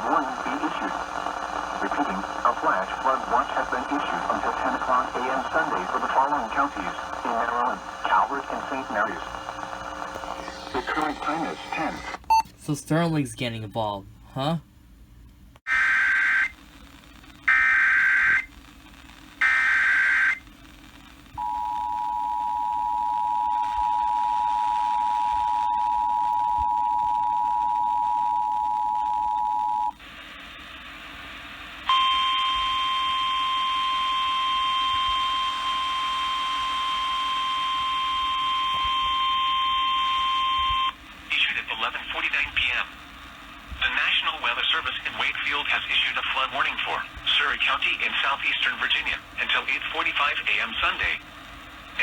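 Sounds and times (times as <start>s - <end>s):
data bursts: 1.9s - 12.5s.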